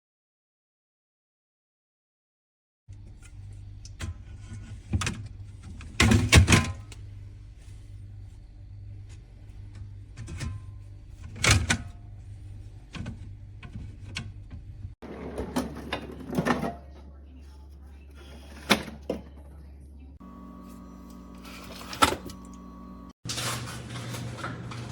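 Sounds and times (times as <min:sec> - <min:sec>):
steady low hum: 0:02.9 - 0:15.0, 0:19.5 - 0:23.2
drink cans clunking on plastic: 0:15.0 - 0:16.9.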